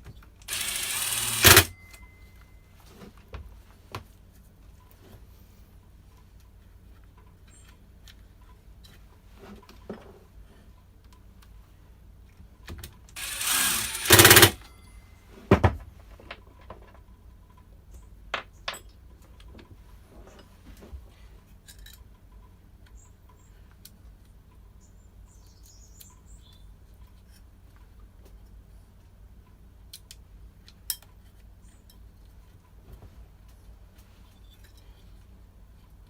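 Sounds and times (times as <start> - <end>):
tools and parts clicking: 0.5 - 2.1, 13.2 - 14.7
loud harsh burst: 13.2 - 14.6.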